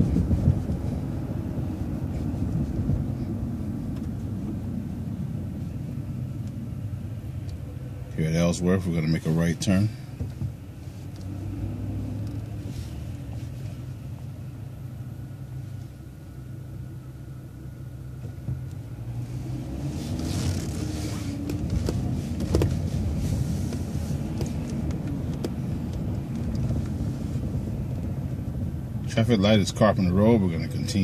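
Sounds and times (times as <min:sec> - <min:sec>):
bus engine humming: 0:00.0 - 0:31.0
road noise: 0:00.0 - 0:31.0
bus body rattles: 0:20.3 - 0:28.8.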